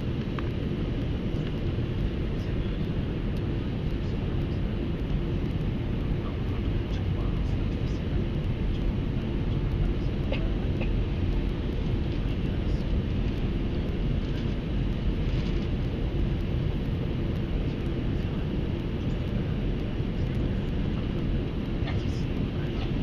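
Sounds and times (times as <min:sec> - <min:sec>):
airliner cabin engine rumble: 0:00.0 - 0:23.0.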